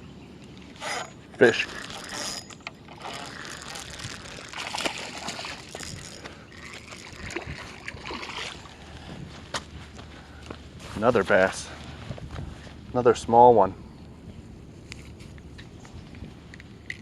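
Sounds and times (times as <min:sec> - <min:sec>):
water splashing and sloshing: 0:00.5 - 0:09.8.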